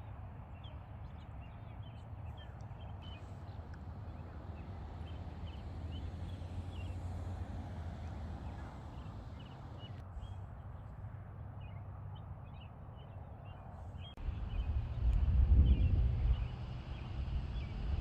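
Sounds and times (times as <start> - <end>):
songbirds chirping: 0.0 - 18.0
steady low rumble: 14.0 - 18.0.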